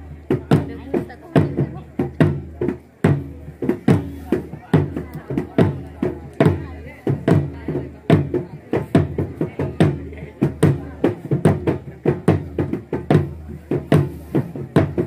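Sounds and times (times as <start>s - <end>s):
drums beaten in rhythm: 0.0s - 15.0s.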